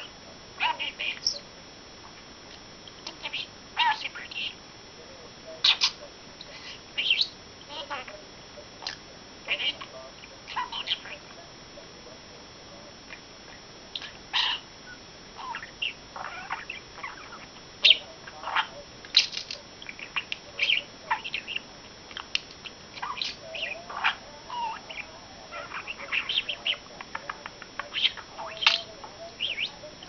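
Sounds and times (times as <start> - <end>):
budgerigar chattering: 0.0 - 1.4, 3.1 - 4.6, 5.6 - 8.1, 8.8 - 11.4, 14.0 - 21.7, 22.6 - 30.0.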